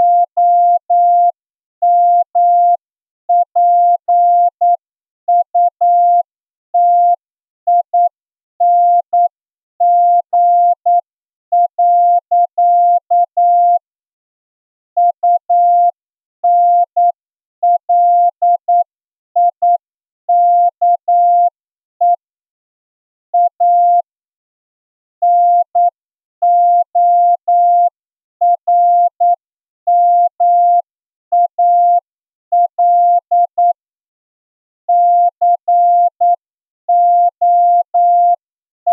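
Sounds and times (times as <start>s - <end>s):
morse code tone beeps: 11.6s - 13.8s.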